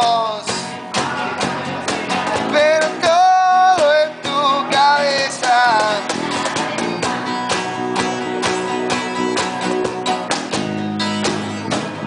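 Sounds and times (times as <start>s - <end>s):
live rock band playing: 0.0s - 12.0s.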